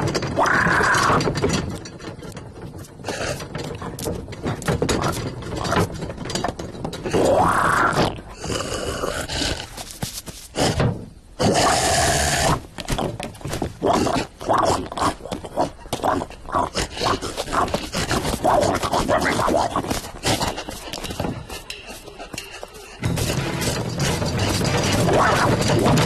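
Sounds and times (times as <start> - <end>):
cartoon animal roars and grunts: 0.2 - 1.4, 7.1 - 9.8, 11.4 - 13.2, 13.8 - 20.6, 24.5 - 26.0.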